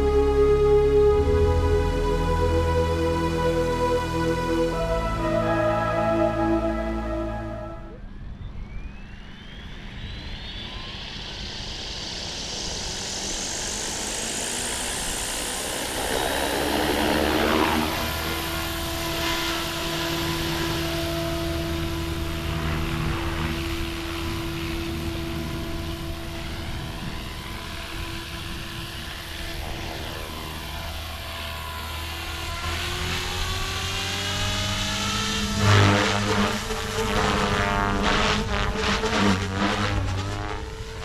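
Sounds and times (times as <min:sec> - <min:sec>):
model helicopter rotor and motor: 0:09.4 - 0:41.0.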